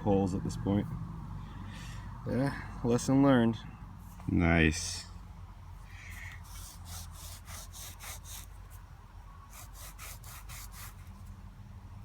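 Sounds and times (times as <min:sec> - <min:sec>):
coin rubbed on fabric: 0:06.1 - 0:08.7, 0:09.5 - 0:11.1.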